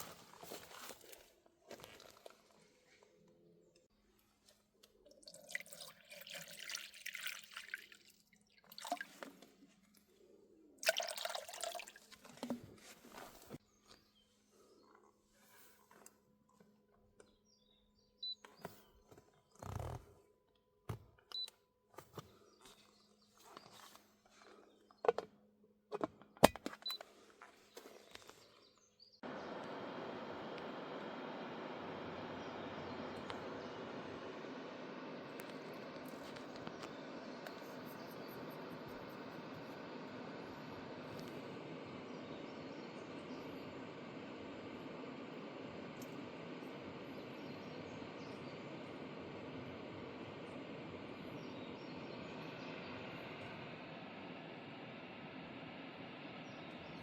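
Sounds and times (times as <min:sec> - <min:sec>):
water dripping through coffee filter: 0:04.8 - 0:09.4, 0:10.8 - 0:12.6
hot water pouring and trickling: 0:05.0 - 0:09.5, 0:10.8 - 0:12.7
faint steady hum: 0:26.6 - 0:57.0.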